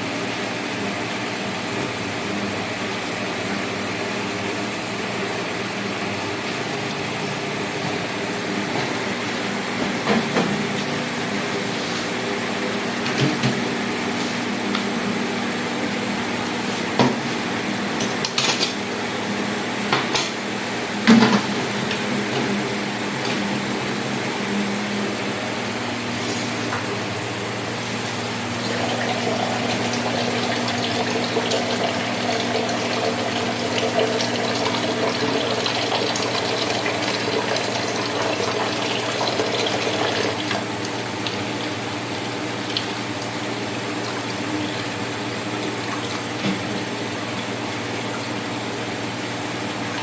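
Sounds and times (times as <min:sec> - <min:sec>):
steady hum: 0:23.5 - 0:46.8.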